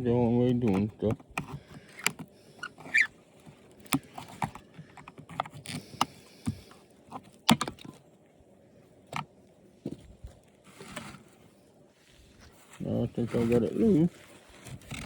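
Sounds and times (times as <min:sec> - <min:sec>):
plastic parts clicking and knocking: 0:00.4 - 0:08.0
plastic scrape: 0:00.6 - 0:07.9, 0:10.6 - 0:11.5, 0:13.2 - 0:15.0.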